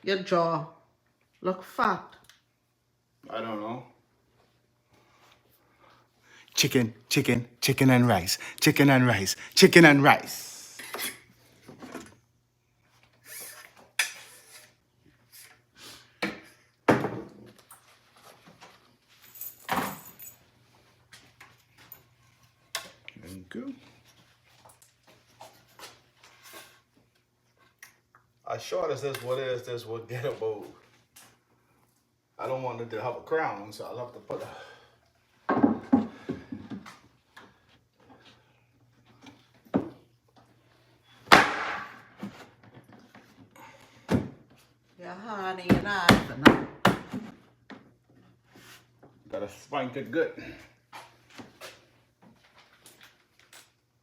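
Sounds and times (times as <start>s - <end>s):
lumber and tools knocking and clattering: 35.4s - 37.0s.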